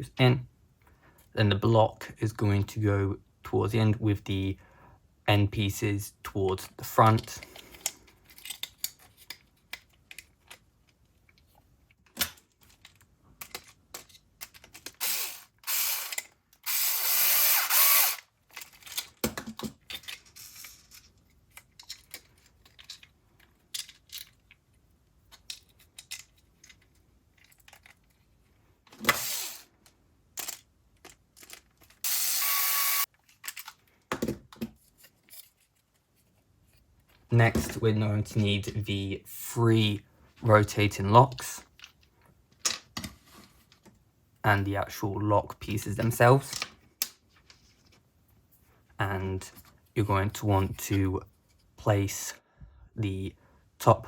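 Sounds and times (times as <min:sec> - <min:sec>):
plastic parts clicking and knocking: 0:06.5 - 0:16.8, 0:17.4 - 0:32.0, 0:33.1 - 0:36.0
power screwdriver driving screws: 0:15.0 - 0:18.3, 0:32.0 - 0:33.1.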